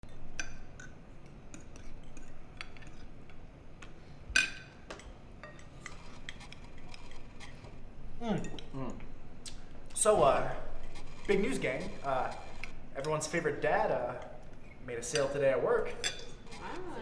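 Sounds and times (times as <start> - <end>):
cutlery clinking on plates: 15.1 - 17.0.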